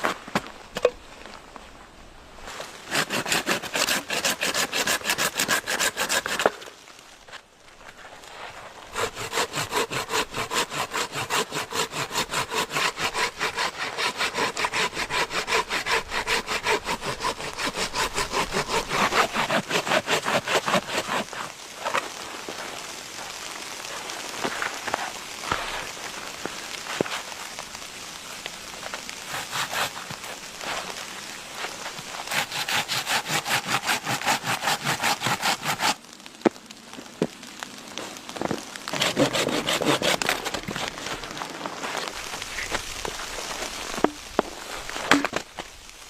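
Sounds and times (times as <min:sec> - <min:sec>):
hand saw cutting wood: 0:02.9 - 0:06.7, 0:09.0 - 0:22.0, 0:29.3 - 0:30.8, 0:32.2 - 0:36.0, 0:38.9 - 0:41.2, 0:45.0 - 0:45.4
wood knocks and cracks: 0:43.9 - 0:45.7.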